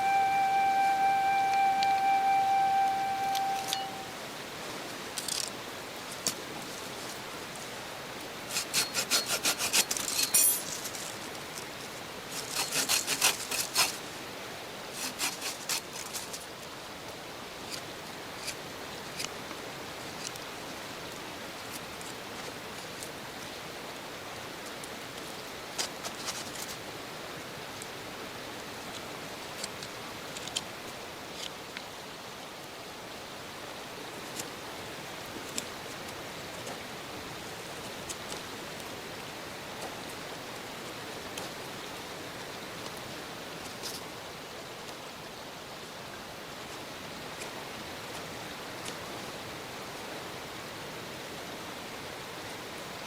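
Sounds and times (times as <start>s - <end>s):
faint hiss: 0.0s - 53.0s
rasping strokes on wood: 8.5s - 9.9s.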